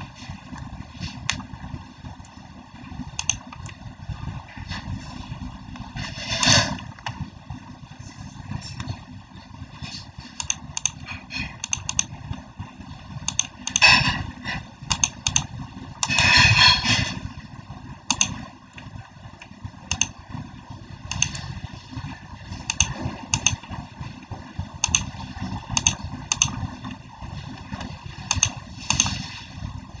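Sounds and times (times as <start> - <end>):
low background rumble: 0.0 - 30.0
keyboard typing clicks: 3.2 - 3.8, 10.4 - 11.0, 11.6 - 12.2, 13.2 - 14.1, 14.8 - 16.3, 18.1 - 18.8, 19.4 - 20.2, 21.1 - 21.4, 22.6 - 23.7, 24.8 - 26.6, 27.8 - 29.2.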